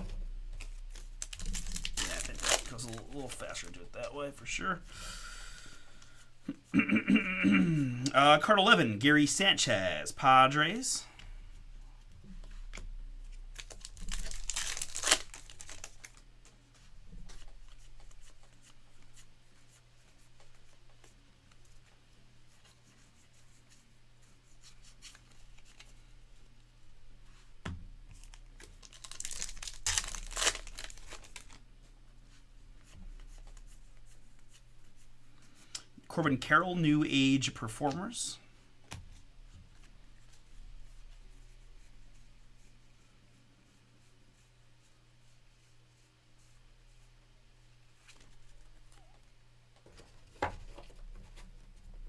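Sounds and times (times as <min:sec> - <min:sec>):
card pack wrapper tearing: 0:00.6 - 0:04.1, 0:13.5 - 0:16.2, 0:28.2 - 0:31.6.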